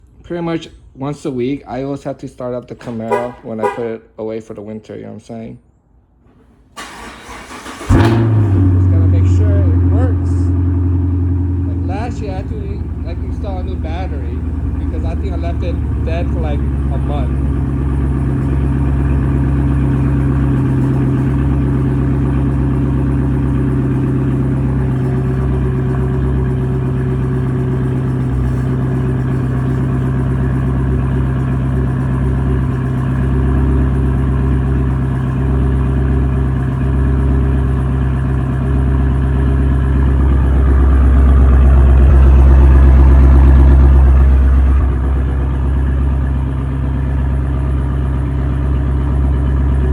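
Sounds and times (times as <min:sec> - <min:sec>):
car engine idling: 0:02.6 - 0:03.9, 0:06.8 - 0:49.9.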